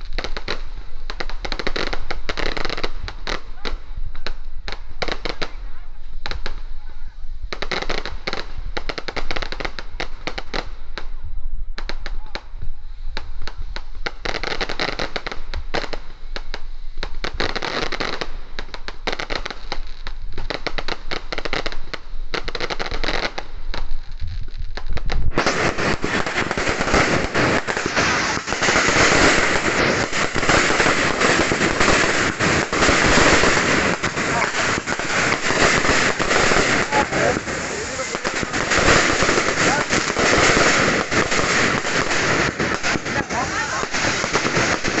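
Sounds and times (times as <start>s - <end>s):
firecrackers banging and crackling: 0.0s - 6.8s, 7.4s - 45.0s.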